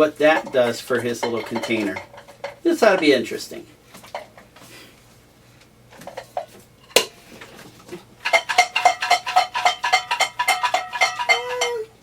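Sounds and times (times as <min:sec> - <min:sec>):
shaker rattling with metallic clinks: 0:08.2 - 0:11.9.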